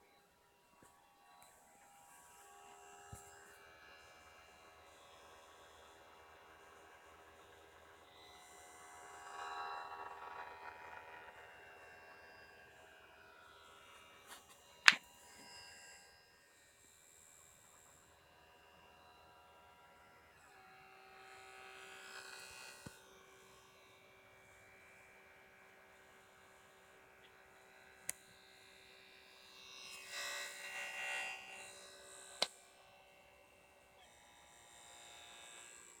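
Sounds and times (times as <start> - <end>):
disc drive rattling whir: 8.9 - 12.7.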